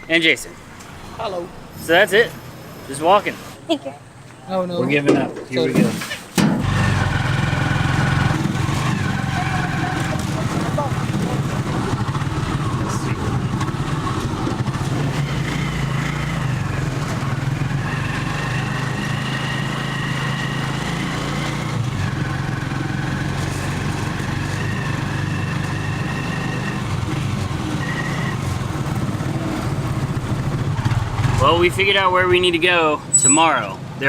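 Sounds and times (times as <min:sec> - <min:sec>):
vehicle engine running: 0:06.6 - 0:32.4.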